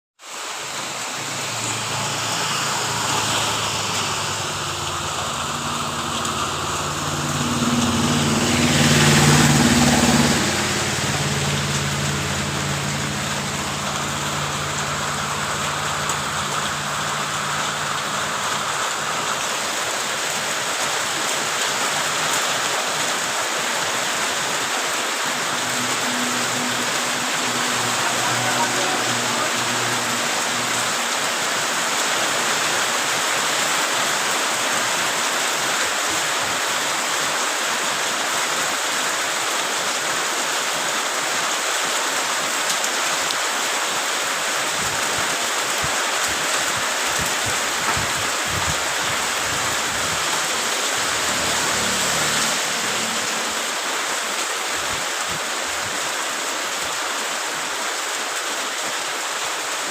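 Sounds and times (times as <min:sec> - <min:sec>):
steady rainfall: 0:00.2 - 0:59.9
low engine hum: 0:00.3 - 0:37.0, 0:47.0 - 0:54.4.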